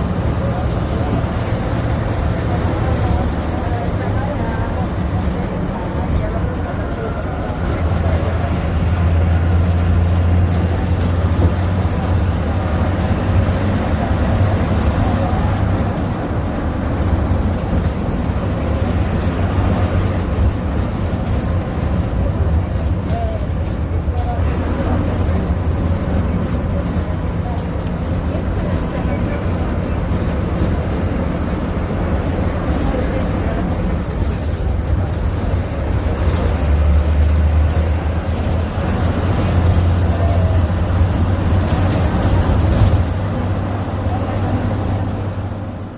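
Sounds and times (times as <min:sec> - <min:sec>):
bus diesel engine running: 0:00.0 - 0:45.9
faint clicks and rattles: 0:00.0 - 0:45.9.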